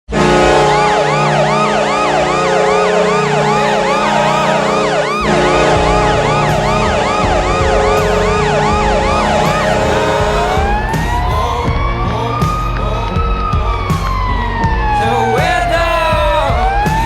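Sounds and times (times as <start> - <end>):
low horn blast: 0.1 - 13.9
yelping siren: 0.2 - 17.0.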